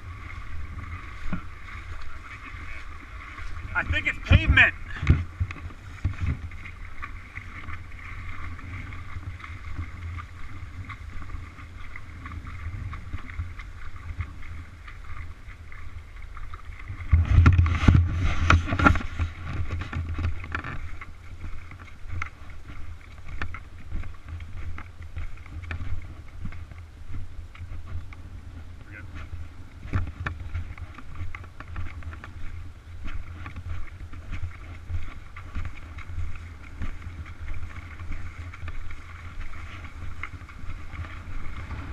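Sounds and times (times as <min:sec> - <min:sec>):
river current rushing: 0:00.0 - 0:15.2, 0:37.1 - 0:41.9
wind buffeting microphone: 0:00.0 - 0:41.9.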